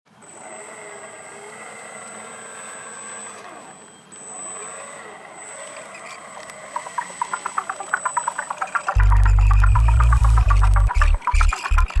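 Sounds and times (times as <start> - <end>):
music with pulsing beat: 7.0 - 12.0.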